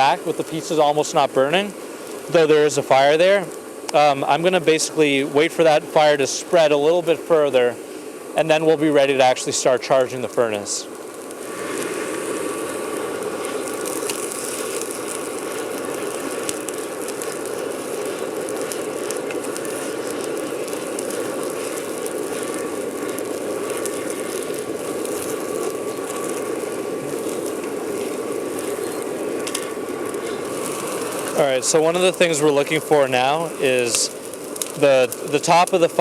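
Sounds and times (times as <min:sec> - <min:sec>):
charcoal crackling: 0:00.0 - 0:36.0
air blower whirring: 0:11.4 - 0:35.8.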